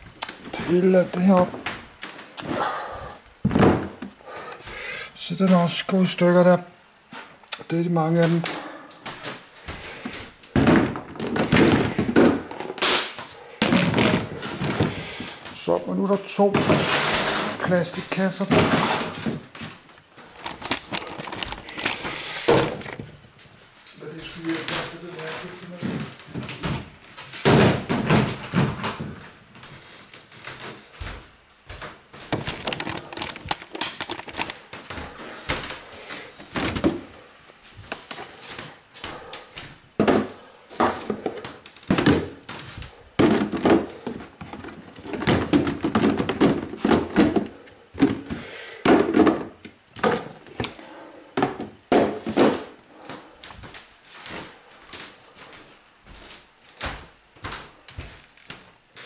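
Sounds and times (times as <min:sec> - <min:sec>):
boxes and crates thudding: 0:03.4 - 0:04.0, 0:10.6 - 0:13.0, 0:13.6 - 0:15.0, 0:43.2 - 0:48.3.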